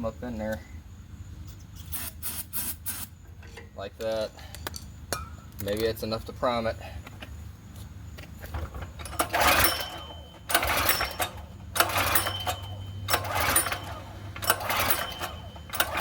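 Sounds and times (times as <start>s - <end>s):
recoil starter whirring crank: 8.8s - 16.0s.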